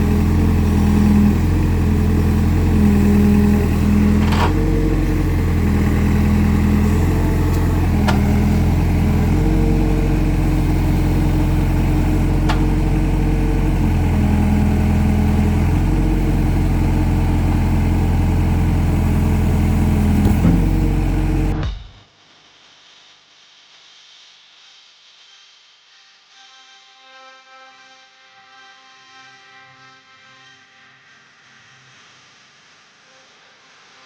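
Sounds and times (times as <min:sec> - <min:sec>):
digging machine engine running: 0:00.0 - 0:21.8.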